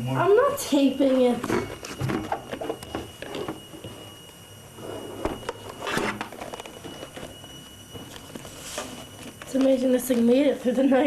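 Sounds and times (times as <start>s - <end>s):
camcorder handling knocks and rustles: 1.4s - 3.7s.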